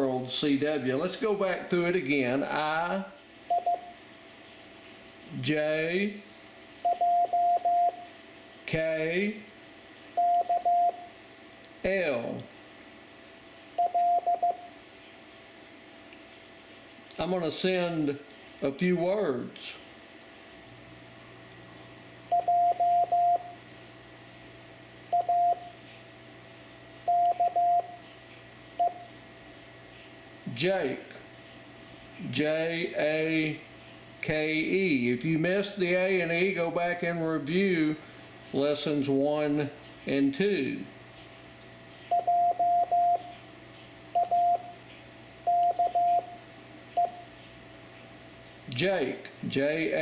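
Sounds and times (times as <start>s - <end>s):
morse code beeps: 3.5s - 4.0s, 6.8s - 8.1s, 10.2s - 11.1s, 13.8s - 14.7s, 22.3s - 23.6s, 25.1s - 25.7s, 27.1s - 28.0s, 42.1s - 43.3s, 44.2s - 44.8s, 45.5s - 46.4s.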